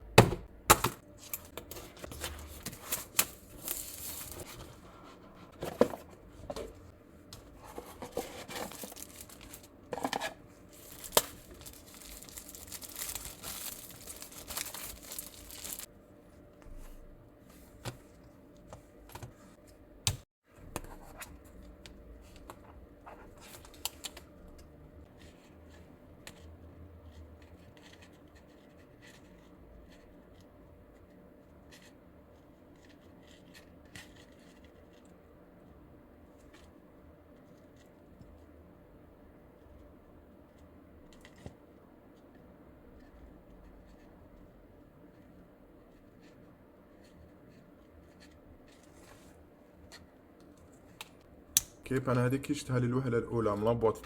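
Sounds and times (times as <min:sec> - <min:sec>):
packaging tearing and crinkling: 0:02.0 - 0:04.5, 0:08.1 - 0:09.7, 0:10.7 - 0:15.9.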